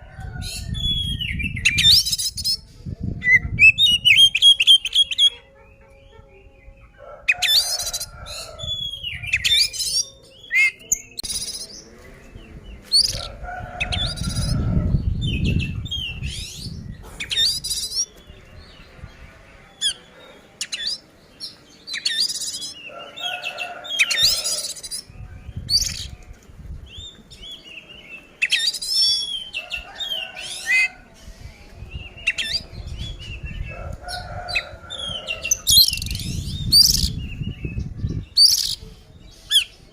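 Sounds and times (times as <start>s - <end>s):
magpie-robin singing: 3.2s - 6.8s, 12.6s - 13.2s, 15.2s - 18.3s, 19.7s - 22.9s, 23.8s - 26.2s, 34.9s - 39.8s.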